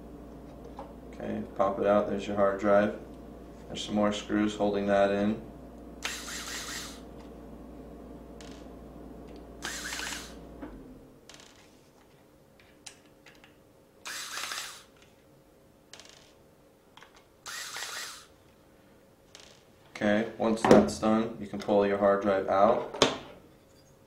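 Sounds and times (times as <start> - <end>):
screwdriver scraping screws: 6.0 - 7.0, 9.6 - 10.3, 14.0 - 14.9, 17.4 - 18.3.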